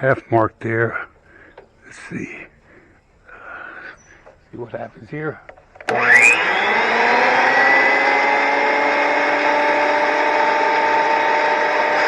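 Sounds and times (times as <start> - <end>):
planer high whine: 5.5 - 12.0.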